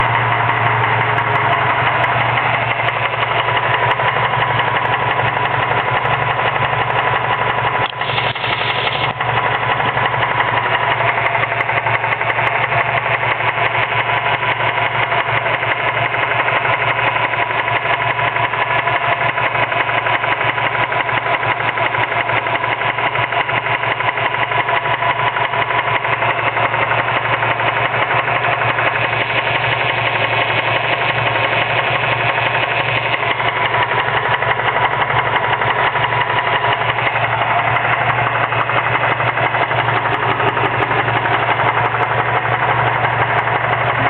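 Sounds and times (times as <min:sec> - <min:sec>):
car engine idling: 0:00.0 - 0:44.0
rapid knocking from belt drive: 0:00.1 - 0:44.0.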